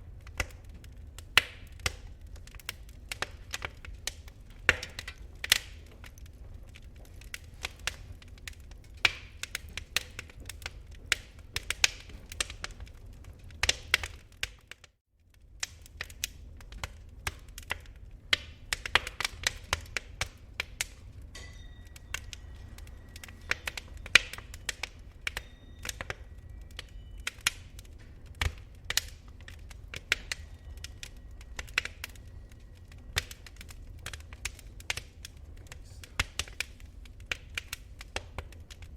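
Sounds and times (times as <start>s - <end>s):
low rumble of embers: 0.0s - 38.9s
wood fire crackling and popping: 0.0s - 38.9s.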